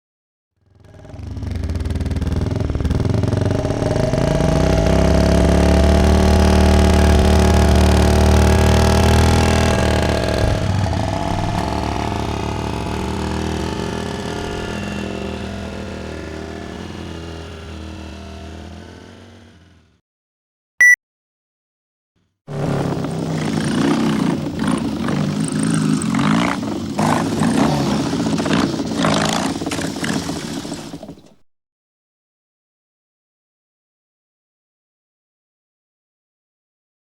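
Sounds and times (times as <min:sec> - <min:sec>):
motorcycle engine running: 0:00.6 - 0:19.8.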